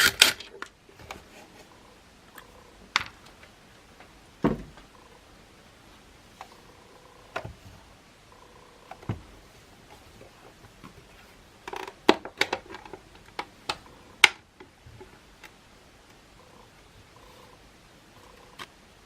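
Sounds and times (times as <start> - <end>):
plastic parts clicking: 0.0 - 1.2, 11.6 - 15.6.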